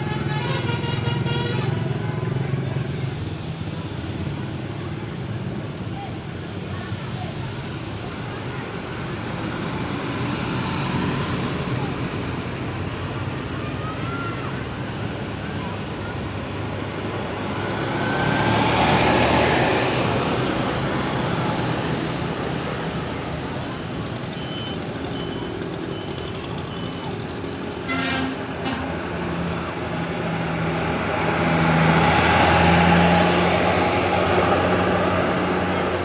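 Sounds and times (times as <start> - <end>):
heavy road traffic: 0.0 - 36.0
high beeps: 24.3 - 27.3.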